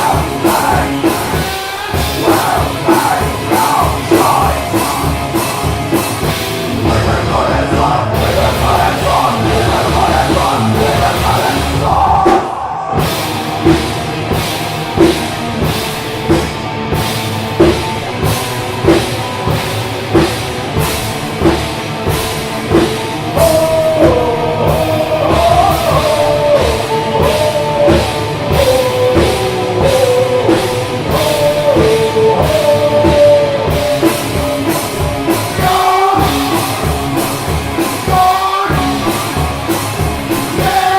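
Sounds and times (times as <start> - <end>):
drum kit beat: 0.0 - 40.9
rock band playing live: 0.0 - 40.9.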